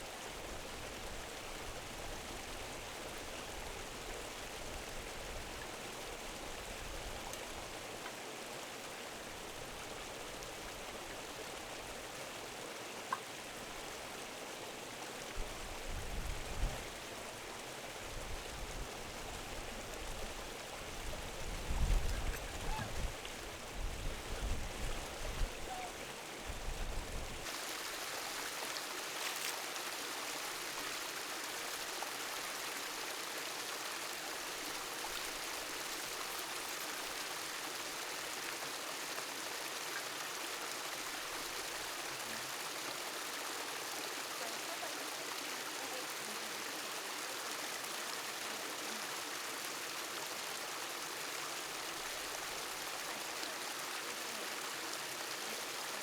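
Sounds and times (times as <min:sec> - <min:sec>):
rushing flowing water: 0:27.3 - 0:56.0.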